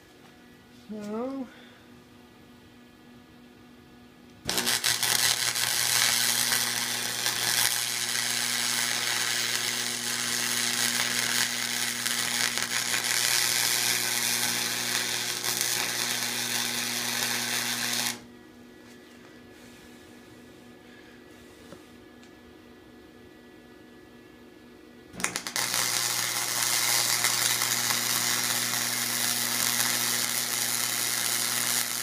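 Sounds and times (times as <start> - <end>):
arc welder crackling sizzle: 4.3 - 18.3, 25.1 - 32.0.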